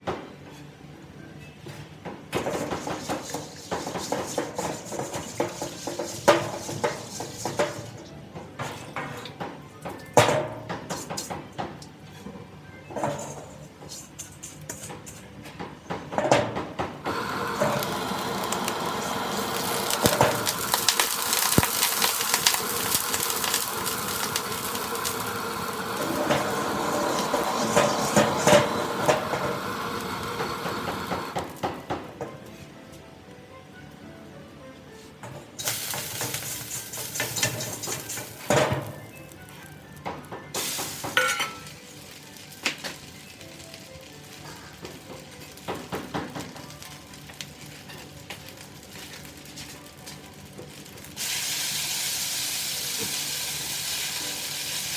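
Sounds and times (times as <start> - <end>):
food sizzling in wok: 2.4 - 8.0, 17.1 - 31.7, 35.6 - 54.9
metal spatula scraping wok: 2.5 - 7.9, 17.6 - 30.2.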